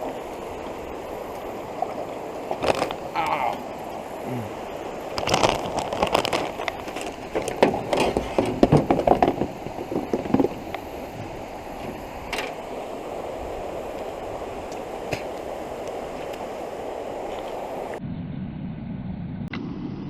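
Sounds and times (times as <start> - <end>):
steady rushing noise: 0.0 - 20.0
clattering knocks in canoe: 5.2 - 12.6.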